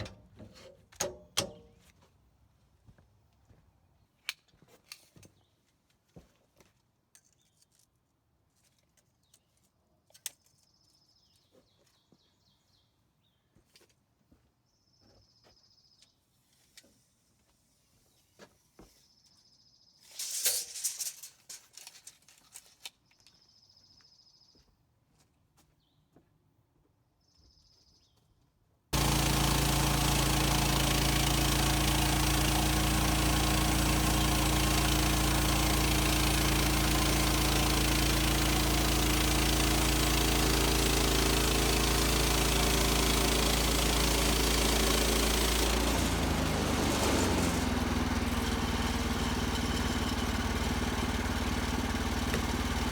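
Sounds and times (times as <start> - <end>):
sawmill engine running: 29.0 - 52.9.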